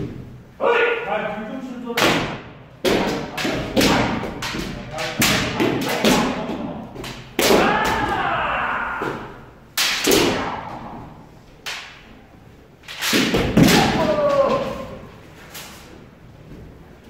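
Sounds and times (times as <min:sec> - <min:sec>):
bamboo sword strikes: 0:02.0 - 0:08.1, 0:09.0 - 0:10.9, 0:12.8 - 0:14.8
long shouts: 0:07.5 - 0:09.6, 0:13.6 - 0:15.1.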